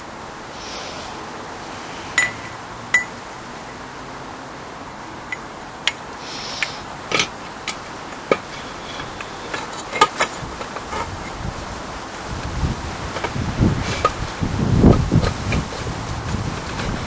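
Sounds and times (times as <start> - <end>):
tools and engine parts knocking: 7.1 - 11.4.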